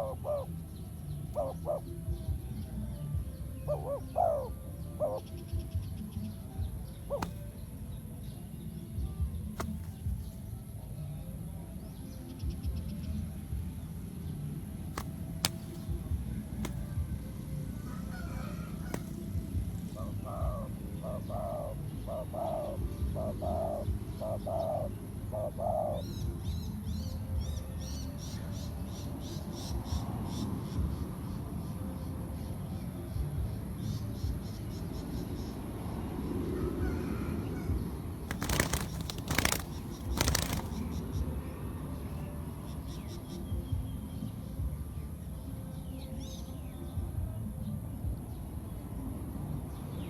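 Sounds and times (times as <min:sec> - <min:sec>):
dove cooing: 0:00.0 - 0:02.5, 0:03.5 - 0:05.5, 0:06.8 - 0:07.6, 0:17.8 - 0:26.1, 0:38.3 - 0:40.8
small birds chirping: 0:00.0 - 0:13.3, 0:14.9 - 0:17.2, 0:38.2 - 0:45.0.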